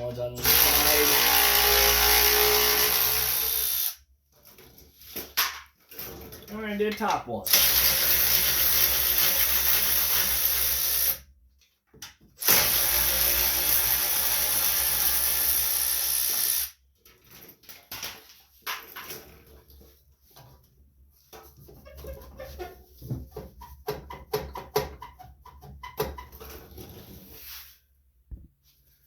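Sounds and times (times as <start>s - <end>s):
power drill spinning: 0.4s - 4.0s, 7.5s - 11.2s, 12.4s - 16.8s.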